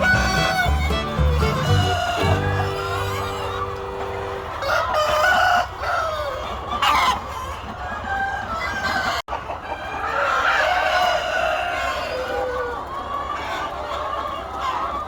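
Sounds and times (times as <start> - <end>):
rooster crowing: 0.0 - 6.4
chickens clucking: 0.0 - 15.0.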